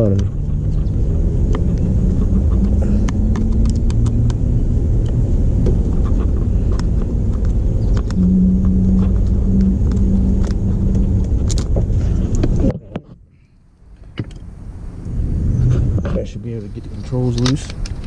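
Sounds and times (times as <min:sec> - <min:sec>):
hand tools clicking and ticking: 0:00.0 - 0:04.4
low hum: 0:00.0 - 0:18.0
steady low rumble: 0:00.0 - 0:18.0.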